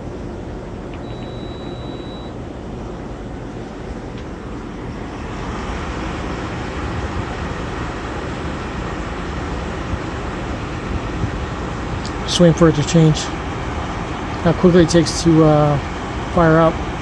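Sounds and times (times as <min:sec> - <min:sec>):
dehumidifier fan whooshing: 0:00.0 - 0:17.0
short high tone: 0:01.0 - 0:02.3.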